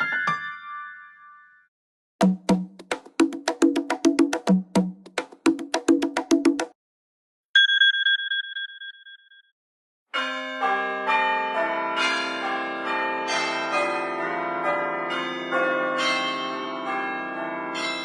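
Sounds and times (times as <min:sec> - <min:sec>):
bell-like ding: 0:00.0 - 0:01.7, 0:07.6 - 0:09.5
ringtone of overlapping bell strikes: 0:07.6 - 0:09.5.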